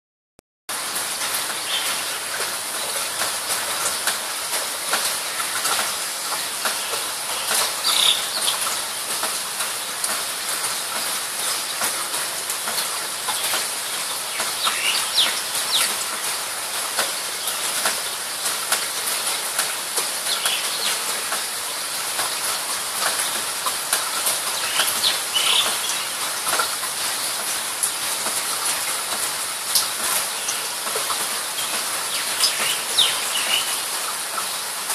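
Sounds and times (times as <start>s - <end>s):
bird chirps: 7.8s - 8.6s, 14.3s - 15.9s, 24.6s - 26.2s.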